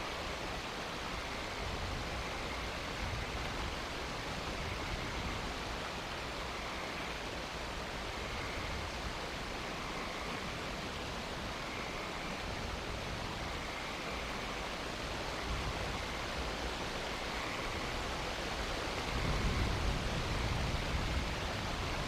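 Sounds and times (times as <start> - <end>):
steady outdoor hiss: 0.0 - 22.0.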